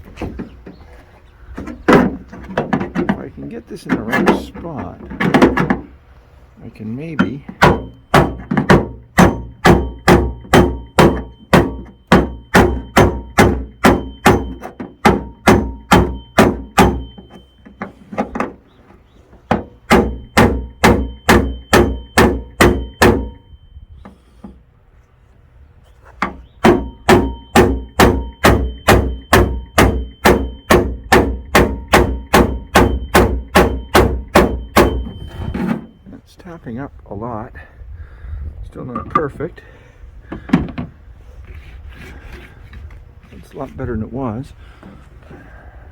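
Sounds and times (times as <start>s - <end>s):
hammer tapping on sheet metal: 7.2s - 18.5s, 19.5s - 23.4s, 26.2s - 35.2s.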